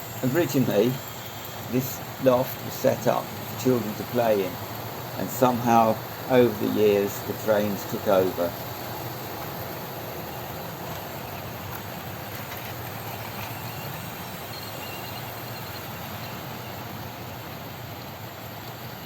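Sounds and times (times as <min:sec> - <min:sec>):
model train running on track: 0:00.0 - 0:19.0.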